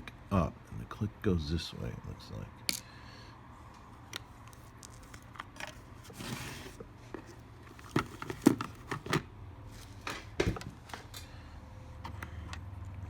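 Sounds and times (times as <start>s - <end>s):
scrape: 6.0s - 6.8s.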